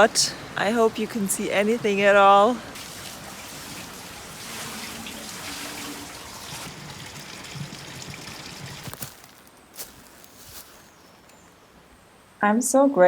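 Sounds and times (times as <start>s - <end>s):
water splashing at a water wheel: 1.9s - 9.5s.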